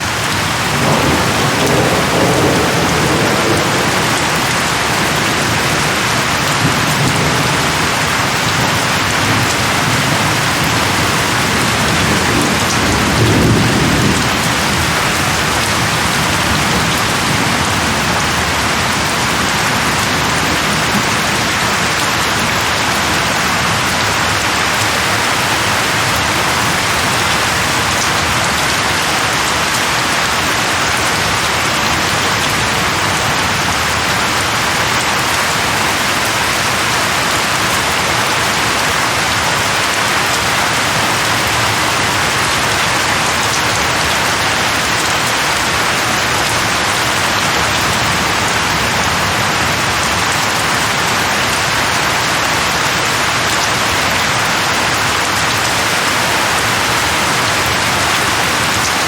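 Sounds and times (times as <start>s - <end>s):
thunder rumbling: 0.0s - 29.0s, 33.1s - 43.4s, 54.7s - 59.0s
heavy rain hissing: 0.0s - 59.0s.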